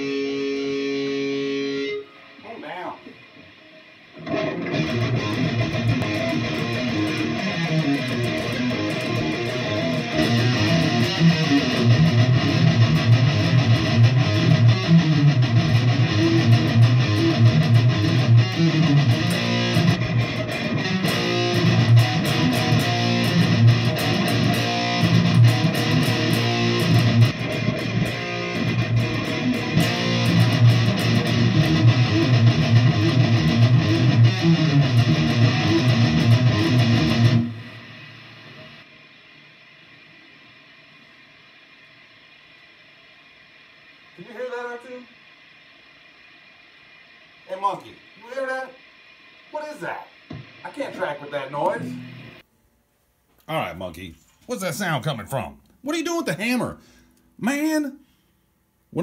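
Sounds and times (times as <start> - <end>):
electric guitar music: 0.0 - 40.4, 50.2 - 52.4.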